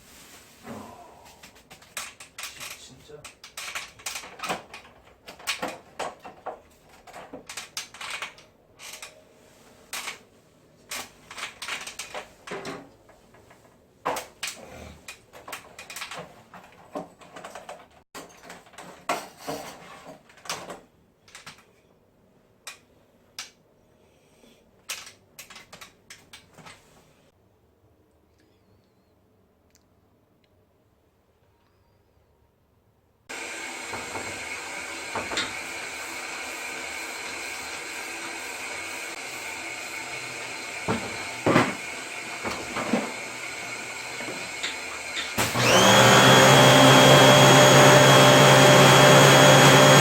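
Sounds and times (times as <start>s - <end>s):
plastic parts and tools clicking: 1.7s - 9.2s, 10.9s - 12.9s, 13.5s - 21.8s, 24.8s - 26.8s.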